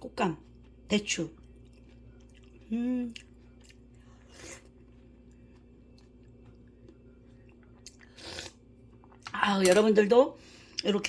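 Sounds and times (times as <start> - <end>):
chewing and mouth clicks: 0.4 - 9.8.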